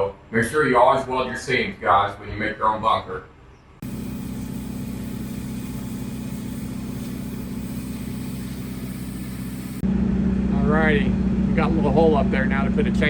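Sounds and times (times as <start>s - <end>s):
heavy equipment engine idling: 3.8s - 13.0s.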